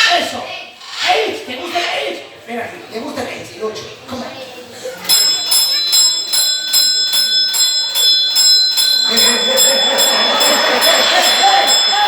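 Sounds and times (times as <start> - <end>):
voices: 0.0 - 12.0
small bell ringing: 5.0 - 12.0.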